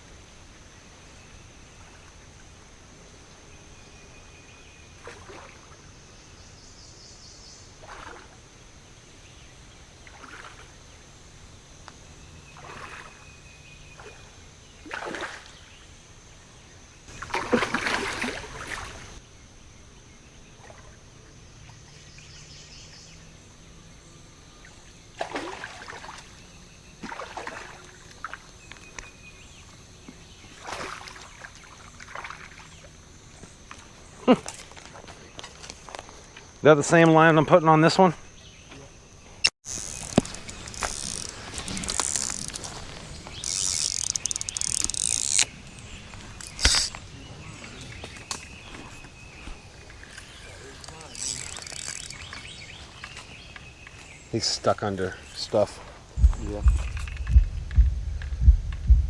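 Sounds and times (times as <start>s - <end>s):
high-pitched insect drone: 39.6s - 45.8s, 50.0s - 52.6s.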